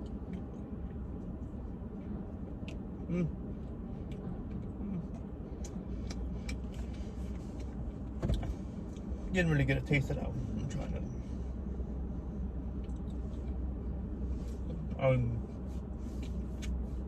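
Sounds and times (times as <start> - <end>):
car interior hum: 0.0 - 17.0
person chewing with mouth clicks: 4.1 - 7.8.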